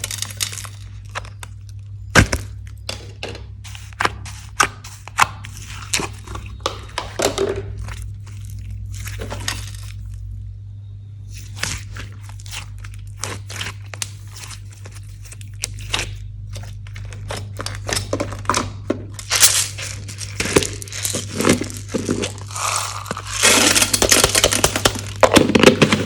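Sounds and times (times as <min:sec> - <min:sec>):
slime squished by hand: 0:11.3 - 0:26.0.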